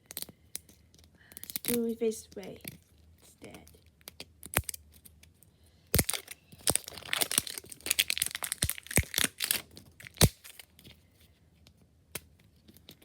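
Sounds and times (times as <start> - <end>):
plastic wrapping crinkling and tearing: 5.9 - 10.9.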